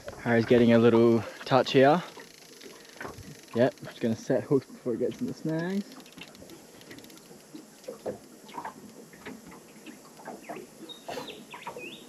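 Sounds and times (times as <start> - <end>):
small clicks: 5.1 - 10.6.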